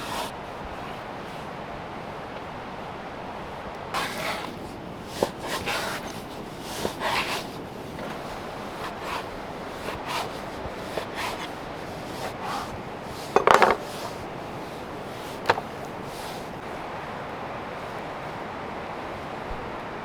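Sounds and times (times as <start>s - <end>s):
knocks and scrapes of kitchenware: 4.0s - 16.4s
kitchenware clatter: 4.0s - 16.5s.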